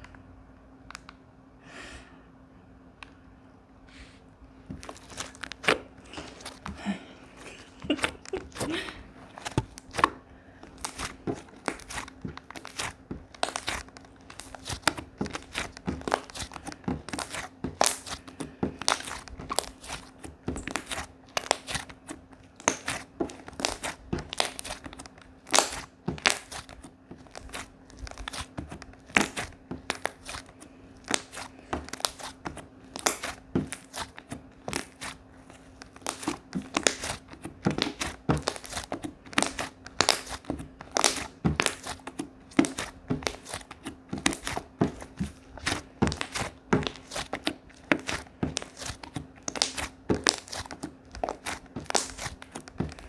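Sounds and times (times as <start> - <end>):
faint steady hum: 0.0 - 53.0
slime popping and crackling: 4.8 - 53.0.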